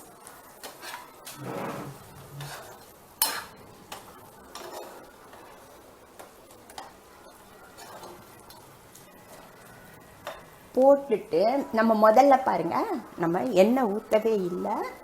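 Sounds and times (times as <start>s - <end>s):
spoon scraping and knocking pan: 0.6s - 9.6s.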